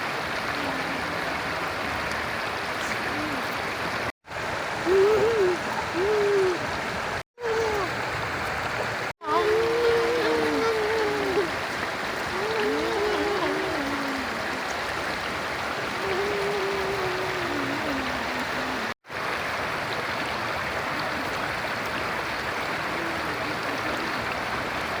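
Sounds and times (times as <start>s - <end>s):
stream rushing: 0.0s - 25.0s
faint voices: 2.8s - 3.6s, 4.8s - 6.7s, 7.4s - 8.0s, 9.2s - 14.8s, 15.9s - 19.0s, 22.8s - 24.5s.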